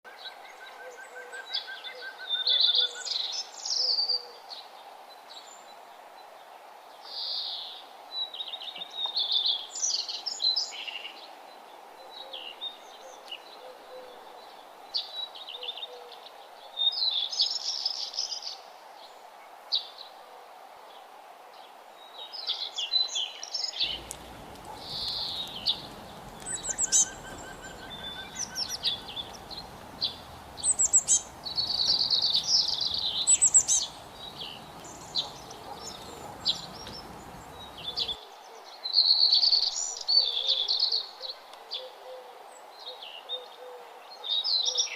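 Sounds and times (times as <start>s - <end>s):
songbirds chirping: 0.1s - 20.2s, 20.9s - 44.9s
steady background hiss: 0.2s - 38.6s
low background rumble: 23.8s - 38.2s.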